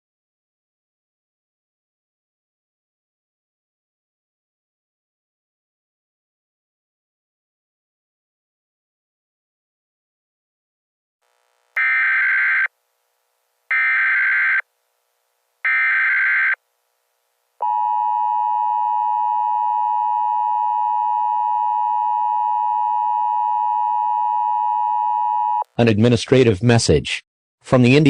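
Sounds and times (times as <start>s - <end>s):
data tone bursts: 11.8s - 12.7s, 13.7s - 14.6s, 15.7s - 16.6s.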